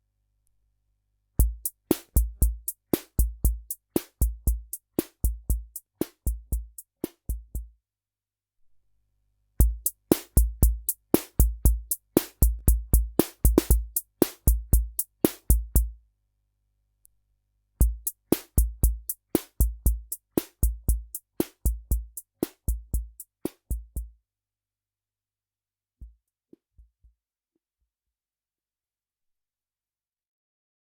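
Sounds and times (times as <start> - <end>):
drum machine rock rhythm: 1.4 - 7.7, 9.6 - 15.9, 17.8 - 24.1.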